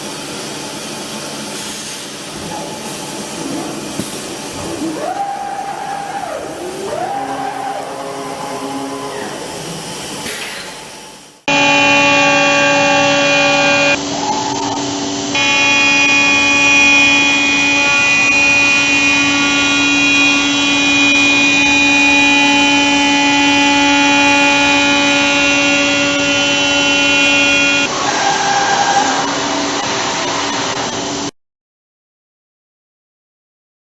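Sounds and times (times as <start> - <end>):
cnc router whine: 11.5 - 31.3.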